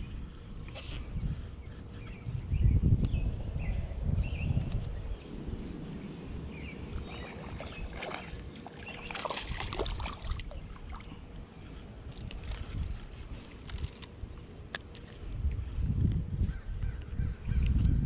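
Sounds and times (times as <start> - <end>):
fish splashing in water: 7.0 - 11.2.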